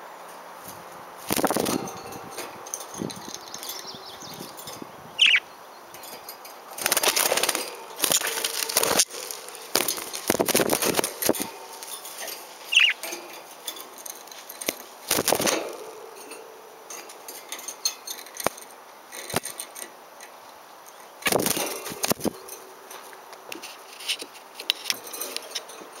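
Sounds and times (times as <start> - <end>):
rustling noise: 0.0 - 5.3, 5.9 - 20.4, 21.0 - 26.0
parakeet chirp: 3.1 - 5.9, 12.7 - 13.0.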